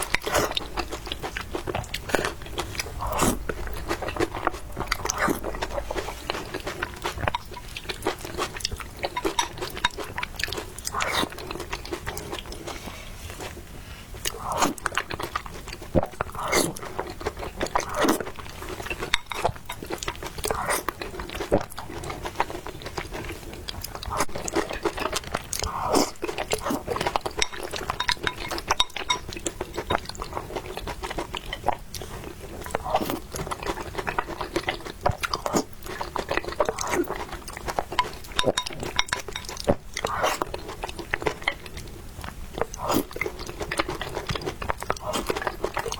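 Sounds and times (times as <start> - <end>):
crunching and chewing food: 0.0 - 45.9.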